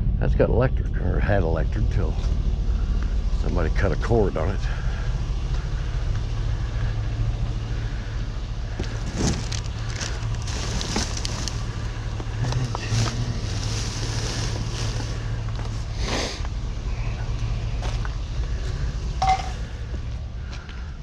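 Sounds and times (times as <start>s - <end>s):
vehicle engine idling: 0.0s - 21.0s.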